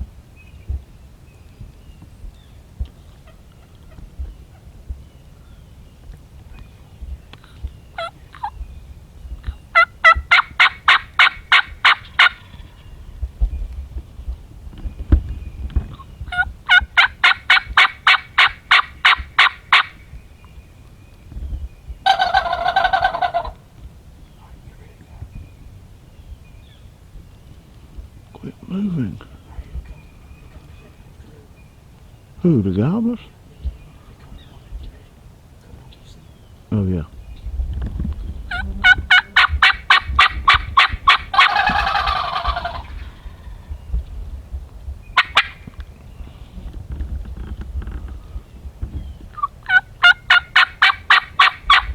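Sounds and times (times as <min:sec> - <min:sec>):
turkey gobble: 0:02.9 - 0:04.7, 0:07.4 - 0:08.6, 0:09.4 - 0:13.1, 0:15.9 - 0:20.1, 0:22.0 - 0:23.9, 0:38.5 - 0:43.7, 0:45.2 - 0:45.8, 0:49.3 - 0:51.9
turkey yelps: 0:08.0 - 0:08.6, 0:09.7 - 0:12.9, 0:15.9 - 0:20.0, 0:22.0 - 0:23.7, 0:38.5 - 0:43.6, 0:45.2 - 0:45.7, 0:49.3 - 0:51.9.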